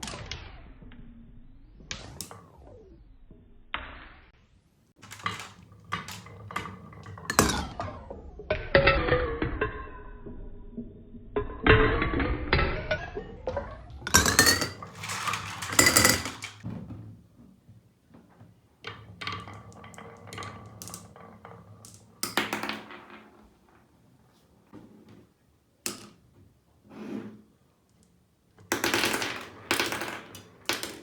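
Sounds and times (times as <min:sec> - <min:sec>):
marbles clattering down marble run: 0:05.0 - 0:07.8, 0:11.8 - 0:16.7, 0:18.8 - 0:23.6, 0:28.7 - 0:31.0.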